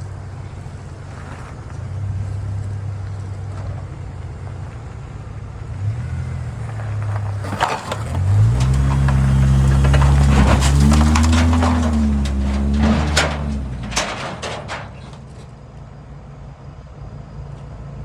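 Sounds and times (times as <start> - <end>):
car engine idling and revving: 0.0 - 15.5.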